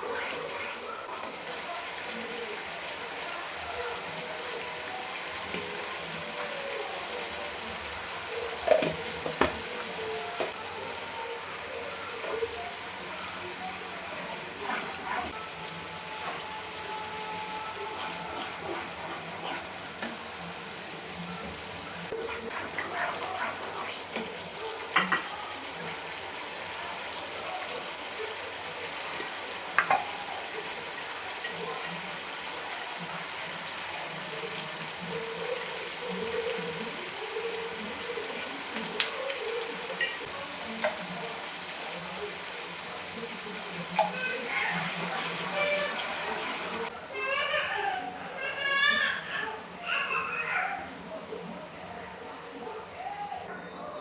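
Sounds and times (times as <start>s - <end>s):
food sizzling in a hot pan: 0.0s - 47.0s
spoon clinking and scraping pan: 14.1s - 15.6s, 22.2s - 26.1s, 37.7s - 41.0s.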